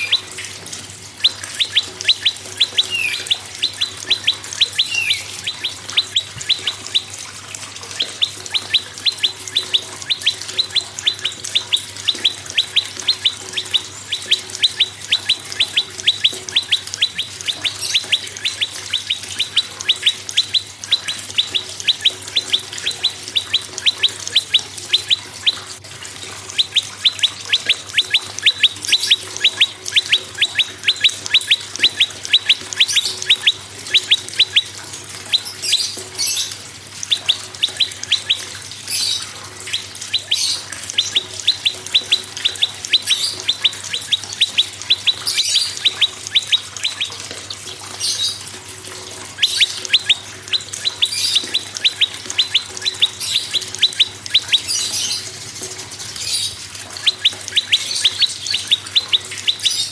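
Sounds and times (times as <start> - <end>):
higher-pitched bird calls: 0.0 - 59.9
bird sharp chip notes: 1.2 - 25.7, 49.2 - 59.9.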